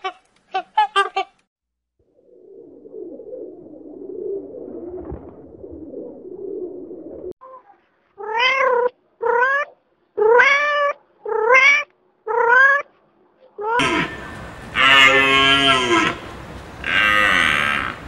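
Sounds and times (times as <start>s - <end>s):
cat meowing: 8.2s - 12.8s.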